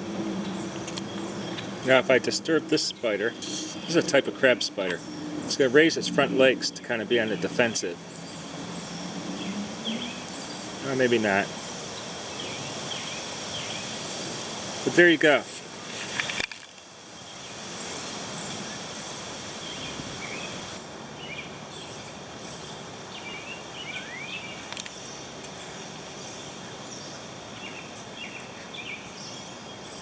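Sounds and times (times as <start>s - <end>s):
steady background hiss: 0.0s - 30.0s
faint bird chirps: 6.8s - 13.9s.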